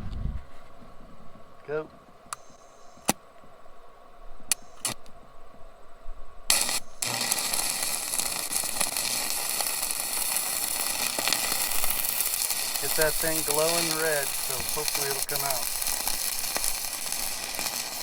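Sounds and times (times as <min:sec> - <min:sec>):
welding arc crackling: 0:04.5 - 0:05.1, 0:06.5 - 0:18.0
welding rod striking clicks: 0:04.5 - 0:05.2, 0:06.5 - 0:18.0.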